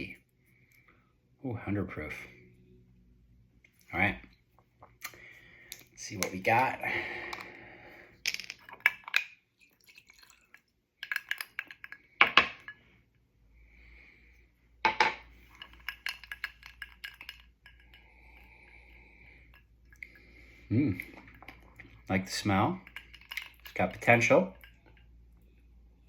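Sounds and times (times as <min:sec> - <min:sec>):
glass bottle and glass clinking: 0:14.9 - 0:18.0.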